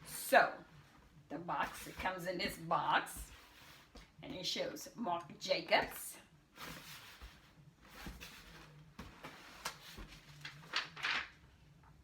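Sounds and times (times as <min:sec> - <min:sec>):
cardboard and paper rustling: 0:06.6 - 0:11.4.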